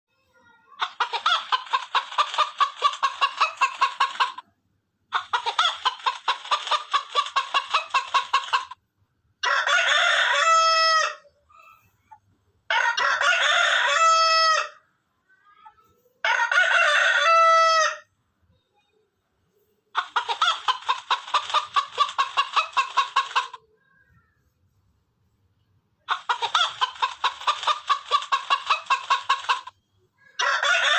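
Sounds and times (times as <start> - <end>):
chickens clucking: 0.8 - 8.8, 19.6 - 23.7, 26.0 - 30.9
rooster crowing: 9.4 - 11.2, 12.7 - 14.8, 16.2 - 18.1, 30.4 - 30.9.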